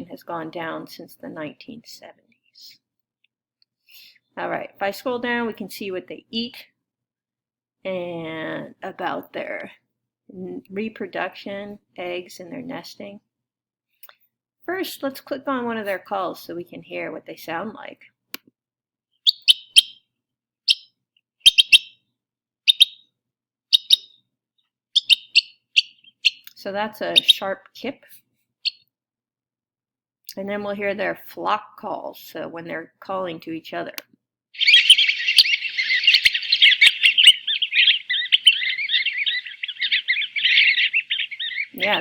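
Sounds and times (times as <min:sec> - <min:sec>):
shorebird sharp kip calls: 0:21.5 - 0:21.9, 0:34.6 - 0:42.0.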